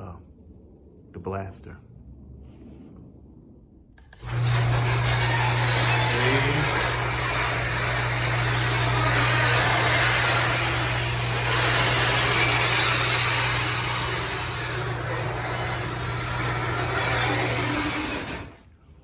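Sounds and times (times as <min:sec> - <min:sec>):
garage door opener motor hum: 0:04.0 - 0:18.7
garage door rattling: 0:04.1 - 0:18.7.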